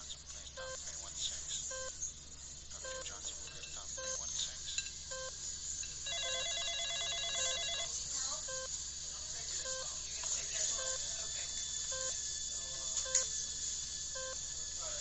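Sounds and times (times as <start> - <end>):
rapidly pulsing electronic tone: 0.0 - 15.0
electronic monitor beep: 0.6 - 0.8, 1.6 - 2.1, 2.8 - 4.3, 5.1 - 5.4, 6.0 - 7.9, 8.5 - 8.7, 9.6 - 9.9, 10.7 - 11.1, 11.8 - 12.2, 13.0 - 13.3, 14.1 - 14.5.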